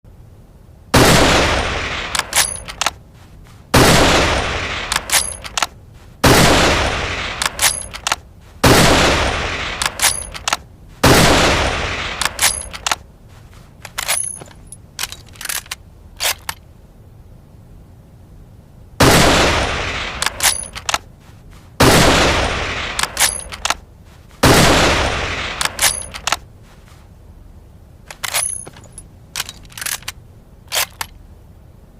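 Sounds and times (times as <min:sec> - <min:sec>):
rifle shots echoing: 0:01.0 - 0:02.9, 0:03.7 - 0:12.9, 0:19.0 - 0:20.9, 0:21.8 - 0:23.7, 0:24.4 - 0:26.3
rifle bolt clicks: 0:02.1 - 0:03.0, 0:04.9 - 0:05.8, 0:07.4 - 0:08.2, 0:09.8 - 0:10.6, 0:12.1 - 0:13.0, 0:13.8 - 0:16.6, 0:20.2 - 0:21.1, 0:22.9 - 0:23.8, 0:25.5 - 0:26.4, 0:28.1 - 0:31.2.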